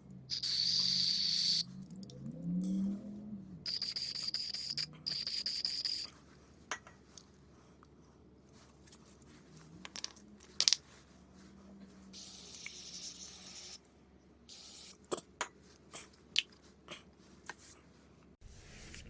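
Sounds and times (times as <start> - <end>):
aerosol can spraying: 0.3 - 1.6, 3.7 - 6.1, 12.2 - 13.8.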